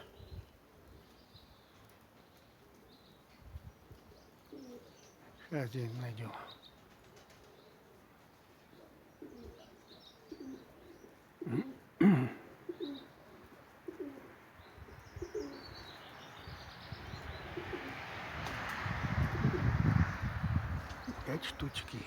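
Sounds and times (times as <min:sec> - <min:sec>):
pigeons cooing: 0:00.0 - 0:05.4, 0:06.2 - 0:22.0
small birds chirping: 0:00.0 - 0:22.0.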